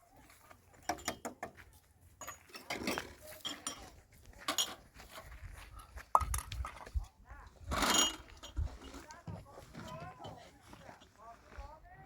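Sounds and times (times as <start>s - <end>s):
dishes and utensils clinking: 2.2s - 4.8s.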